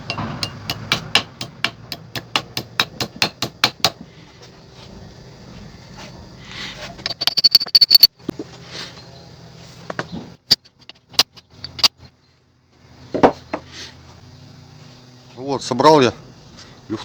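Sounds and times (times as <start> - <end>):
metallic taps and clinks: 0.0 - 3.7
metal knocks: 0.0 - 4.0.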